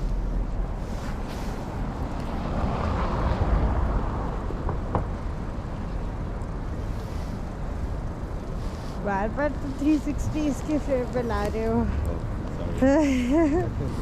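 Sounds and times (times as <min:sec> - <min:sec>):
vehicle passing close: 0:00.0 - 0:06.2
street traffic rumble: 0:00.0 - 0:14.0.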